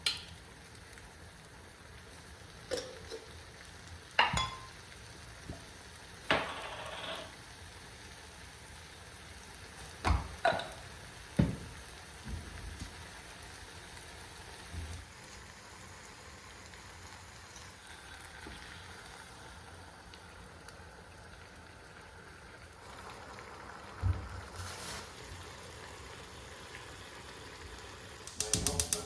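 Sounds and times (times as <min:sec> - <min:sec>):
kitchenware knocking: 0:04.2 - 0:04.7, 0:06.3 - 0:07.3, 0:28.3 - 0:29.0.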